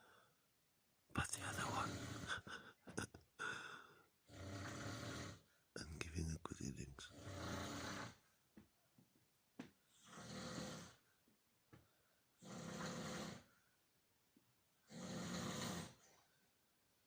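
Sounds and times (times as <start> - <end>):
person snoring: 1.2 - 5.5, 6.9 - 8.2, 10.0 - 11.0, 12.4 - 13.5, 14.9 - 16.0.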